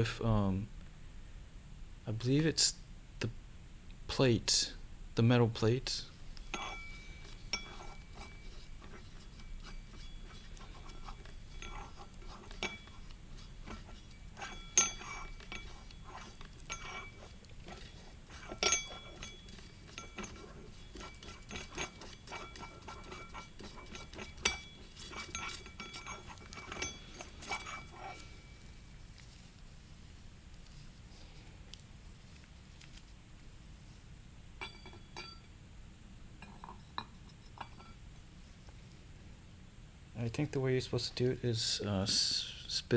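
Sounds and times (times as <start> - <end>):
metallic ring: 5.9 - 29.4, 34.6 - 35.7, 36.4 - 38.4
metal parts clinking: 6.5 - 28.5.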